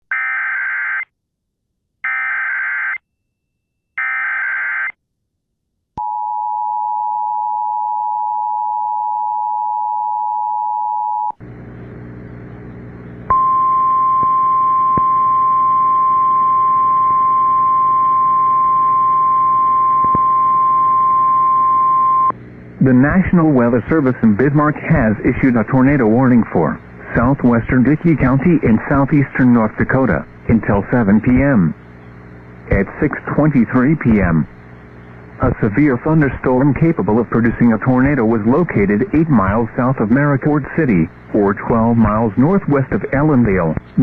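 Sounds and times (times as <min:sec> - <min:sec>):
buzzing hum: 0:11.3 - 0:44.0.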